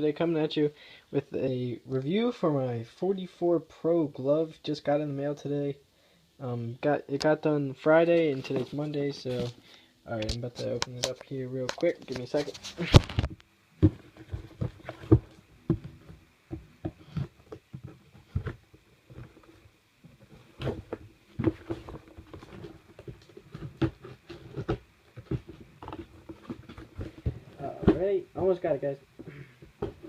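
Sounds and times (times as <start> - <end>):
packaging rustling: 10.3 - 28.0.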